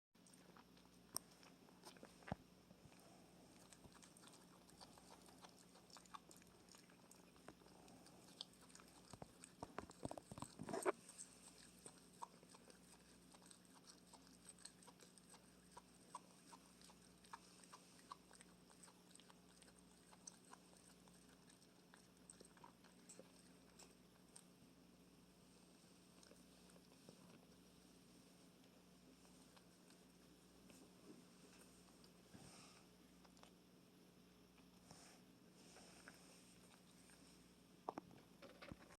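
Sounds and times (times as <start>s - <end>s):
animal chewing food: 0.2s - 24.6s.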